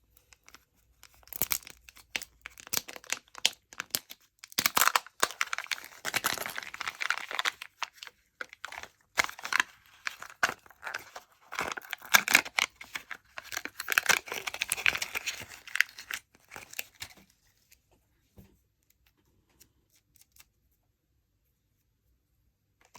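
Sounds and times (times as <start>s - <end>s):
candy wrappers crinkling and tearing: 0.3s - 17.2s.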